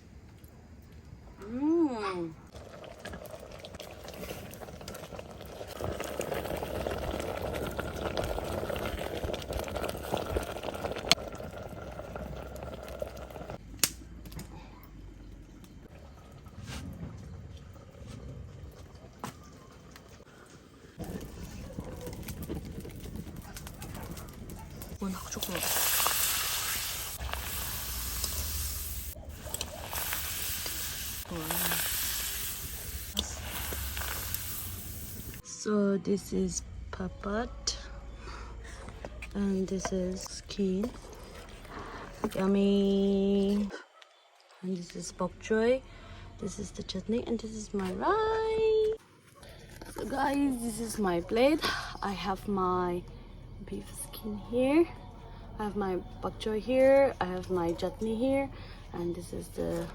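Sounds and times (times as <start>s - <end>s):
pot of food boiling: 2.5s - 13.9s, 15.8s - 35.4s.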